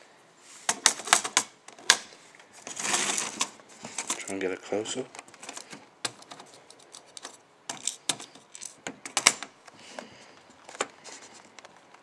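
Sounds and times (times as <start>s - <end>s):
metal padlock parts clicking: 6.1s - 9.5s.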